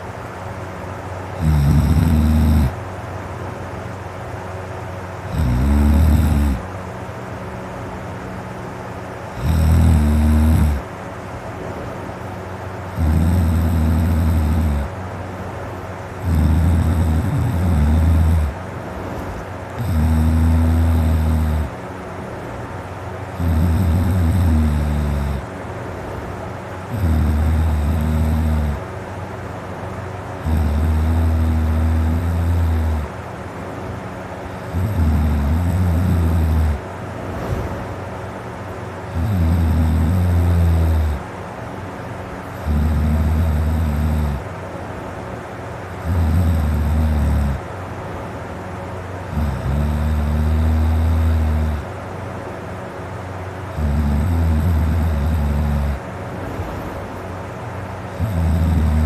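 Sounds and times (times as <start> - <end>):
man snoring deeply: 1.2 - 2.8, 5.2 - 6.8, 9.3 - 10.9, 12.8 - 15.0, 16.1 - 21.8, 23.2 - 25.6, 26.8 - 28.9, 30.2 - 33.2, 34.2 - 38.4, 39.0 - 41.3, 42.4 - 44.6, 45.8 - 47.7, 49.1 - 52.1, 53.6 - 59.0
breathing: 58.1 - 59.0.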